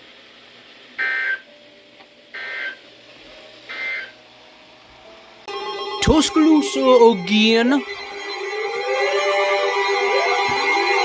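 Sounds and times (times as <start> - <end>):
loud steady tone: 5.5 - 11.0.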